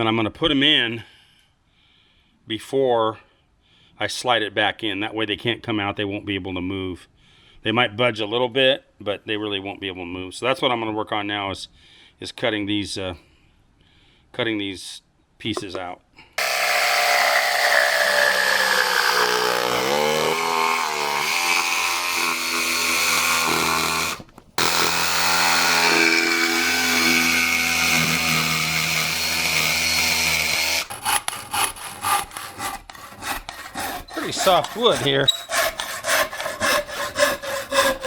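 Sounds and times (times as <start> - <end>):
power tool cutting wood: 16.4 - 38.0
rubbing strokes on wood: 31.0 - 38.0.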